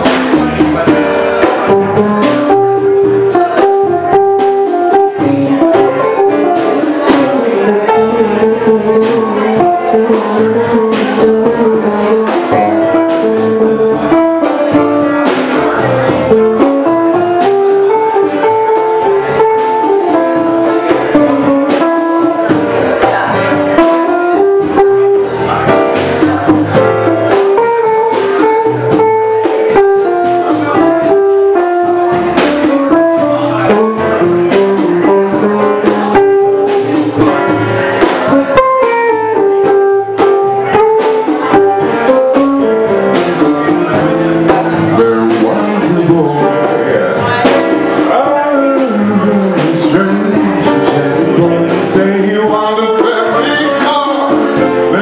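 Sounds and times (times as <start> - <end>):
bass notes: 0.0 - 55.0
drum and cymbal strikes: 0.0 - 55.0
single-note melody line: 1.8 - 15.0.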